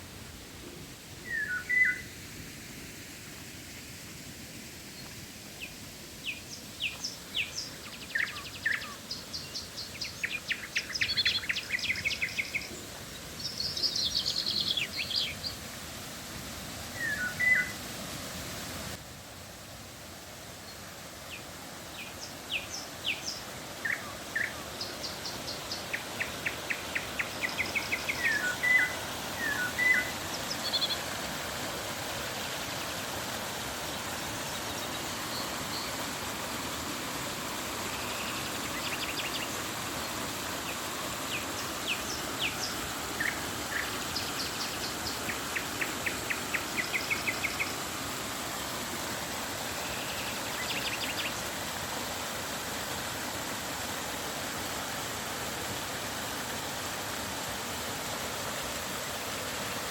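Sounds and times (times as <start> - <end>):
river water rushing: 0.0 - 59.9
birds chirping: 1.2 - 2.0, 22.0 - 31.1.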